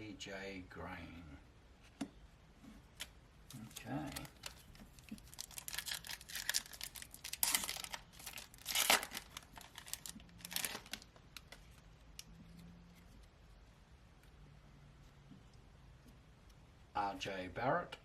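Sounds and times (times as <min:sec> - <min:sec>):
card pack wrapper tearing: 0:03.0 - 0:12.3.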